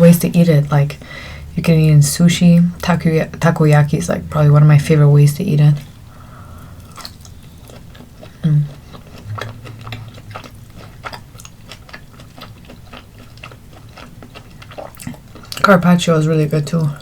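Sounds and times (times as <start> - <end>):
mouth chewing wetly: 5.8 - 17.0
person humming: 8.4 - 8.7.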